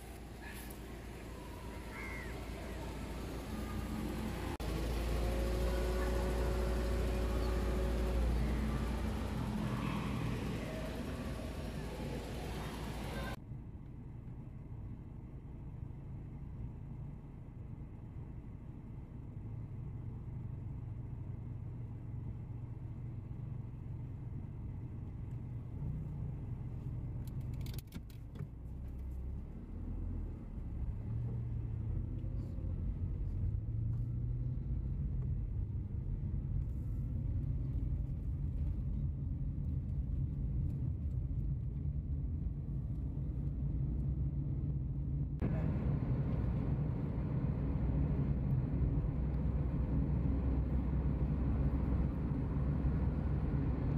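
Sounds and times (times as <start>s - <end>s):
road noise hiss: 0.0s - 13.4s
vehicle engine rumble: 0.0s - 53.9s.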